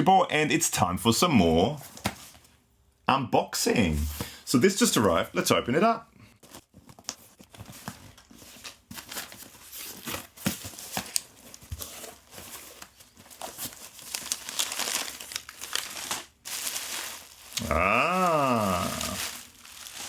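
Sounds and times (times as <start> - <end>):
tape and packaging tearing: 12.8 - 20.0.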